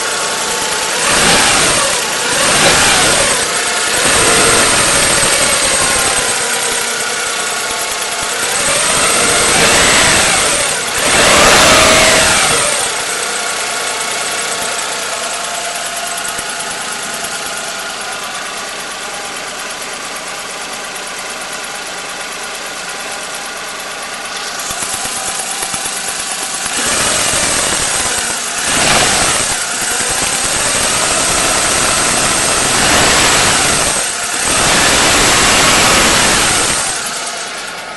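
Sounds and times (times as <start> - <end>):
car engine revving and idling: 0.0 - 37.9
high-pitched engine whistle: 8.2 - 13.1.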